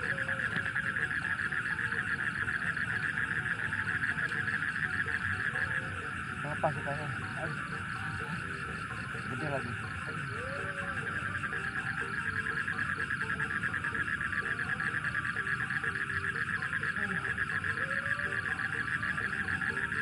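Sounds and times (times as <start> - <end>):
high pulsing insect trill: 0.0 - 20.0
low frog calls: 0.0 - 20.0.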